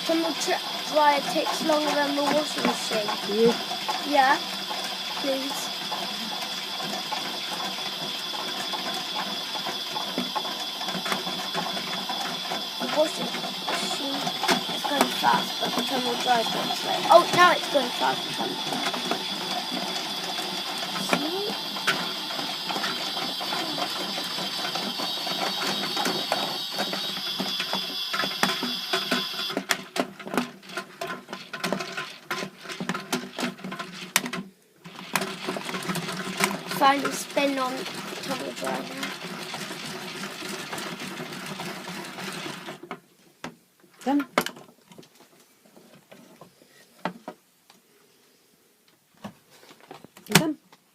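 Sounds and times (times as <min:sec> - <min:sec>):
small motor whine: 0:00.0 - 0:30.0, 0:34.8 - 0:42.8
plastic gears clicking: 0:00.0 - 0:42.8
washing machine and dryer whirring: 0:00.0 - 0:42.9.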